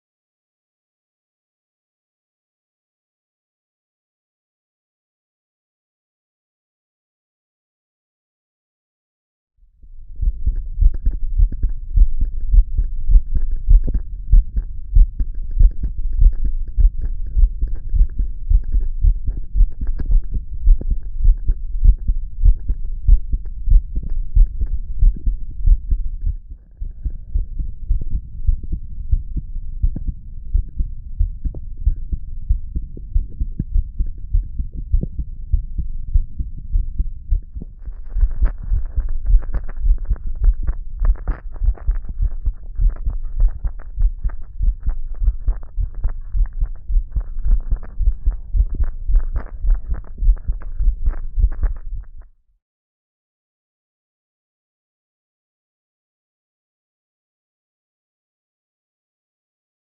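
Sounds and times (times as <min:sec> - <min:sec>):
heartbeat thumps: 0:09.8 - 0:52.3.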